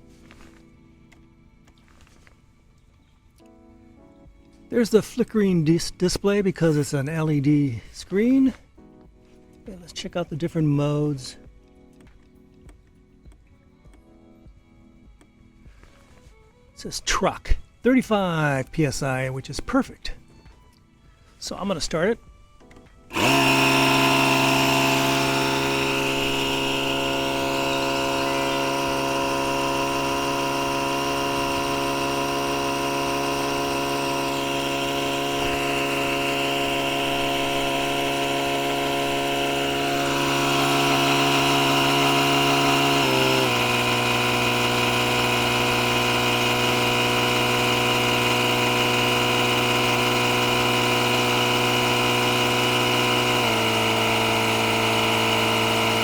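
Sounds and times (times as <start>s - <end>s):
air compressor running: 23.0s - 56.0s.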